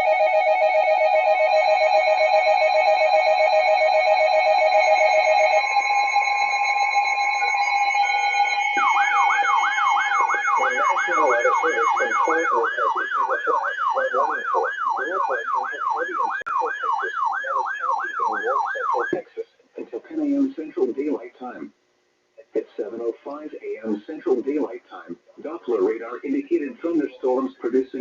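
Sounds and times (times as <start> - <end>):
steady alert tones: 3.7 - 19.2.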